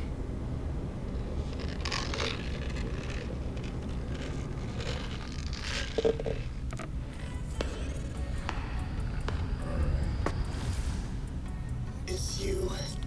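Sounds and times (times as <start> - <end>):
steady low hum: 0.0 - 13.0
rustling and scraping: 1.0 - 11.3.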